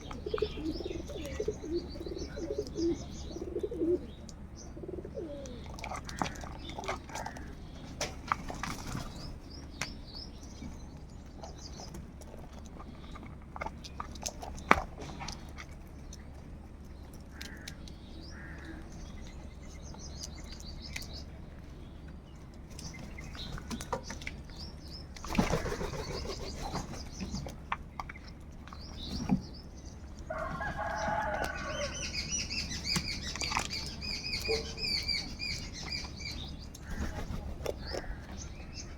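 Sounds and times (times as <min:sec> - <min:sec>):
small birds chirping: 0:00.0 - 0:38.9
crows flapping wings: 0:25.1 - 0:27.6, 0:36.8 - 0:38.3.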